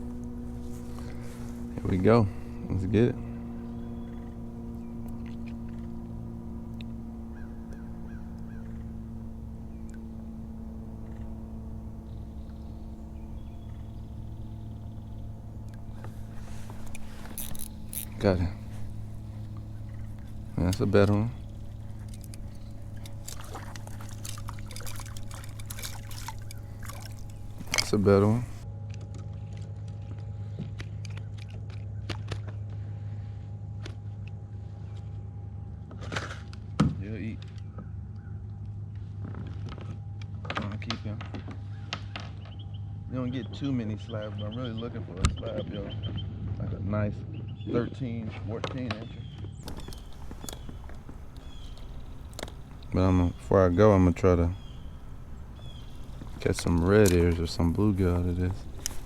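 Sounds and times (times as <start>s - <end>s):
bird calling short notes: 0.0s - 28.6s, 49.6s - 59.0s
steady hum with overtones: 0.0s - 28.6s, 49.6s - 59.0s
light clicks and taps: 49.6s - 59.0s.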